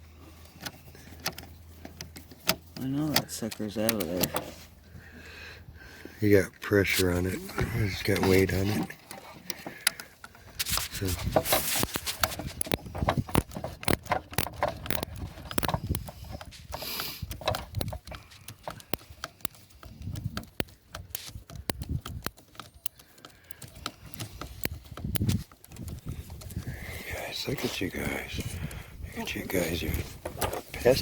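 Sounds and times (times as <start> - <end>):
sharp clicking and knocking: 7.6 - 28.8.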